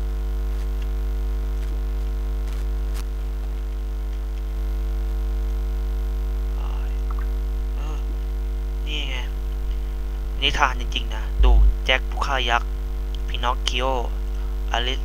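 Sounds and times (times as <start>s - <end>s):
electrical mains hum: 0.0s - 15.0s
speech: 6.6s - 7.0s, 7.8s - 8.1s, 8.9s - 9.3s, 10.4s - 12.6s, 13.2s - 15.0s.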